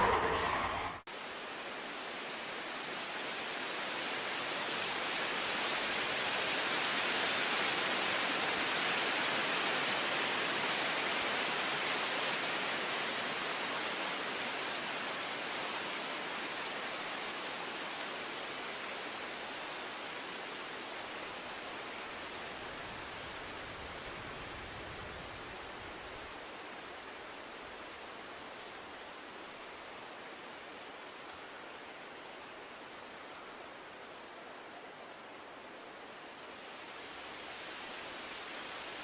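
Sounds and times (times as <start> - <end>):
steady rushing noise: 0.0 - 1.1.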